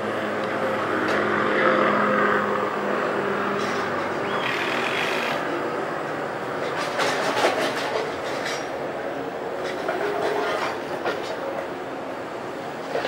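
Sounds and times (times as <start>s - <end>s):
vehicle engine hum: 0.0s - 8.4s.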